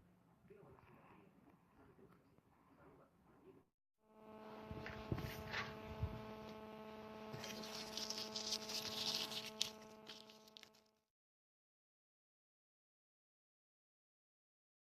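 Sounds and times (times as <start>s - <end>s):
electrical hum: 4.1s - 11.0s
rustling: 7.2s - 10.9s.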